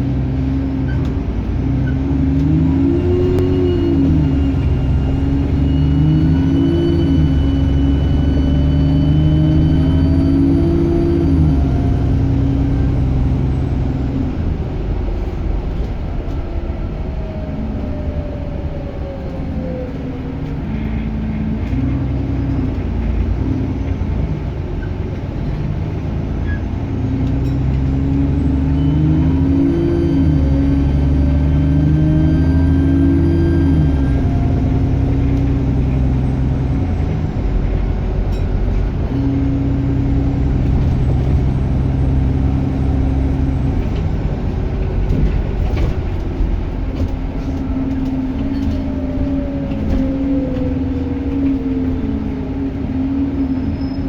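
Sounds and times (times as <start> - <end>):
bus diesel engine running: 0.0 - 54.0
turbocharger whine: 0.0 - 54.0.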